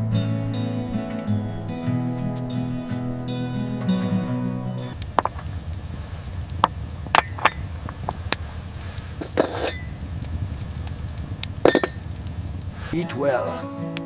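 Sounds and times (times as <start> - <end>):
steady low rumble: 0.0 - 13.0
sharp clicks and knocks: 4.9 - 5.5.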